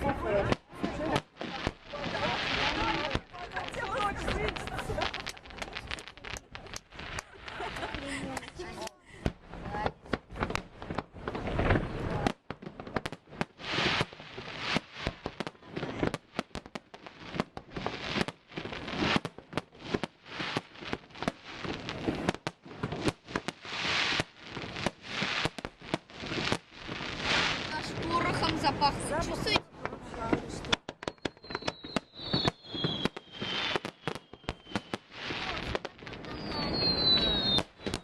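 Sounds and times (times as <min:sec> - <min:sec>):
fireworks bangs: 0:00.0 - 0:38.0
fireworks crackling: 0:00.0 - 0:38.0.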